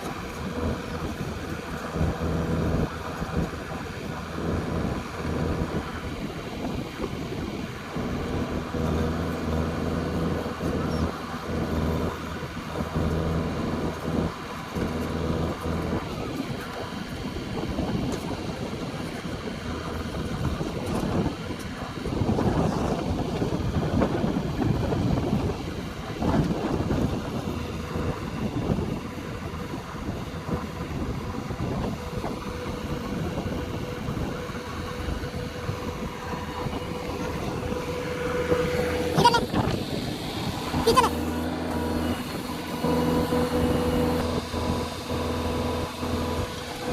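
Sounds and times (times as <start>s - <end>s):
diesel engine working hard: 0.0s - 46.9s
thin steady whine: 0.0s - 46.9s.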